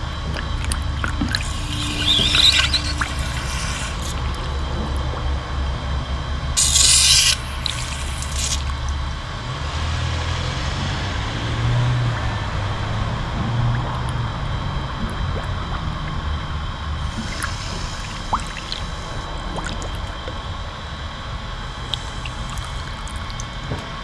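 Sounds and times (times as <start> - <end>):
loud hiss burst: 1.4 - 4.3, 6.6 - 8.7, 17.0 - 19.2.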